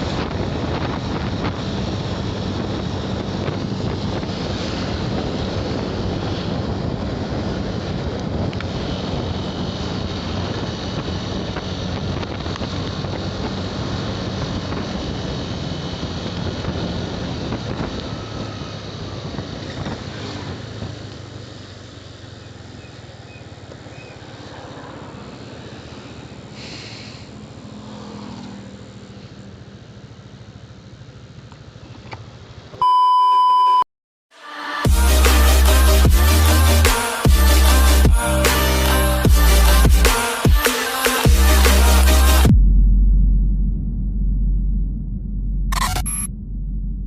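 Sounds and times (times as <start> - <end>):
wind rushing over microphone: 0.0 - 21.1
motorcycle engine running: 0.0 - 24.3, 34.9 - 40.6.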